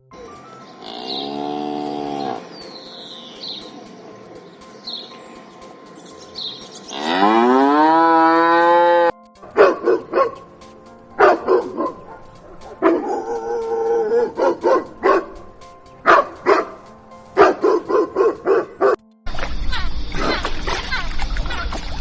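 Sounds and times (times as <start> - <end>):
cow mooing: 0.8 - 2.5, 6.9 - 9.2
dog barking: 9.5 - 10.4, 11.2 - 15.4, 16.0 - 16.8, 17.4 - 19.0.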